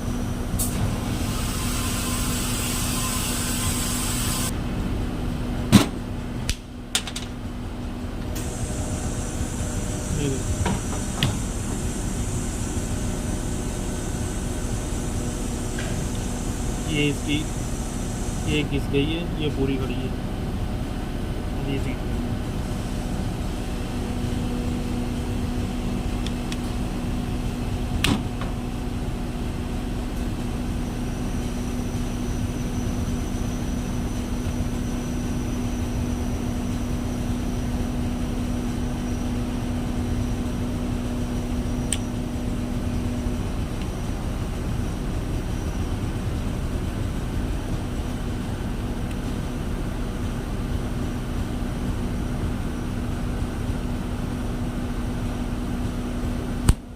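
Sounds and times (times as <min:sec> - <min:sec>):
machine-like background noise: 0:00.0 - 0:56.9.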